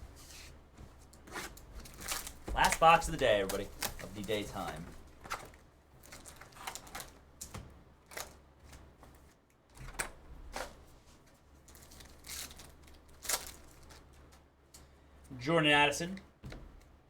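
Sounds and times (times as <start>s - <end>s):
wrapping crinkling and rustling: 0.0s - 14.5s
cards clicking: 2.0s - 5.4s.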